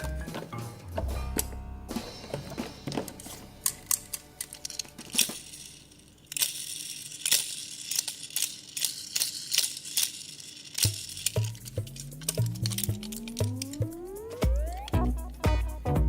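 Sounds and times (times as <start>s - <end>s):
background music: 0.0s - 5.6s, 11.4s - 16.0s
toy cars clicking: 3.6s - 15.4s.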